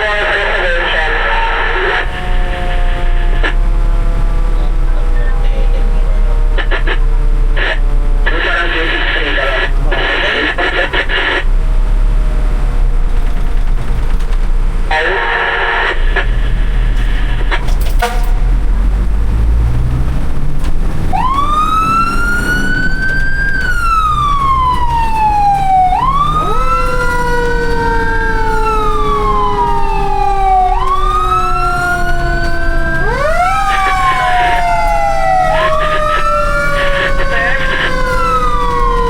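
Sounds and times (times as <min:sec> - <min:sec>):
lower-pitched siren: 0:00.0 - 0:11.4, 0:20.8 - 0:39.0
fire truck sirens wailing: 0:00.0 - 0:39.0
truck engine rumble: 0:00.0 - 0:39.0.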